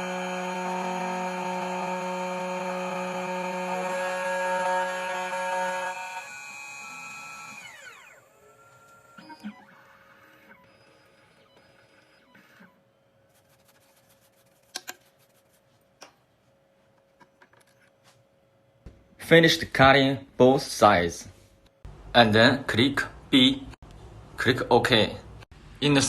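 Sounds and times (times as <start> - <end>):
key cutting machine spindle whining: 0.0 - 10.7.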